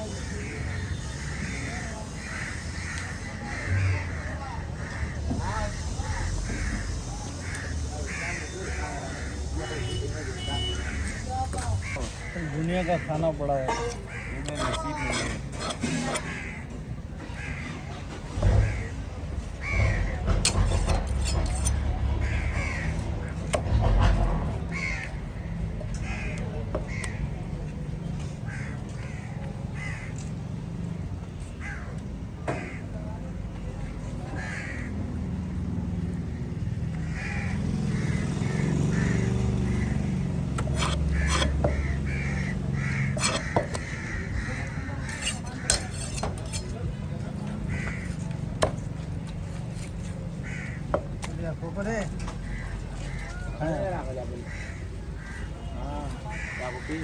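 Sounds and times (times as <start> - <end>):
crows cawing: 0.0 - 23.6, 24.6 - 30.5, 31.5 - 33.2, 33.8 - 57.0
murmur of voices: 37.1 - 57.0.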